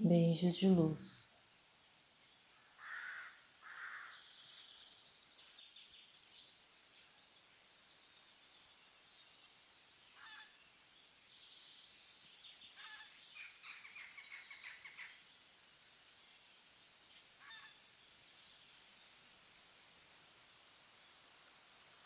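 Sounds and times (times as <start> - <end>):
soft steady hiss: 0.0 - 22.0
birds calling: 2.7 - 4.7, 12.6 - 15.3.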